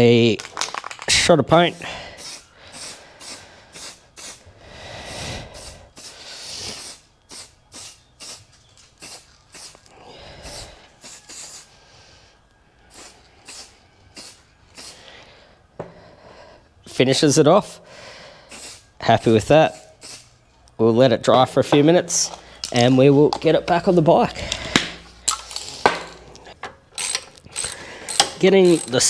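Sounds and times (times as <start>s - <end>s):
spray paint can hissing: 2.2s - 4.4s, 5.6s - 9.9s, 11.0s - 11.7s, 12.9s - 15.0s, 18.5s - 20.4s.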